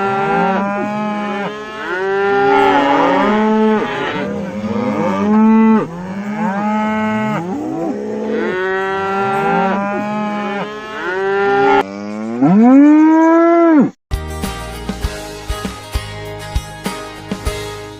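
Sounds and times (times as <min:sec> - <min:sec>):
cattle mooing: 0:00.0 - 0:13.9
strummed guitar music: 0:14.1 - 0:17.9.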